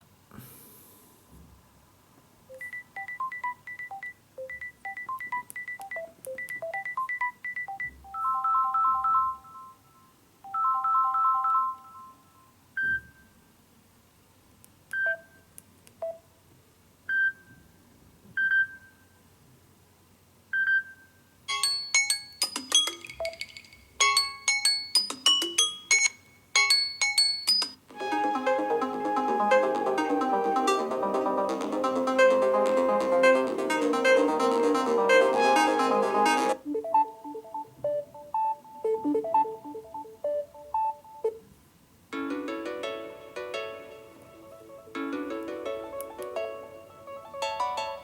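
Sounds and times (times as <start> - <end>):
bell-like ringtone tune: 7.6 - 12.4, 21.5 - 41.3
tinkling ringtone melody: 21.5 - 41.3.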